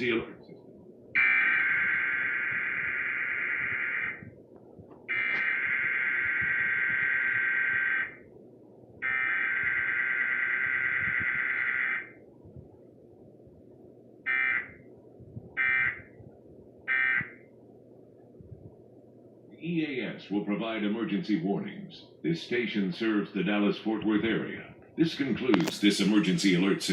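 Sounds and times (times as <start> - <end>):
buzzing two-tone data signal: 1.2 - 4.4, 5.1 - 8.2, 9.0 - 12.2, 14.3 - 14.8, 15.6 - 16.1, 16.9 - 17.4.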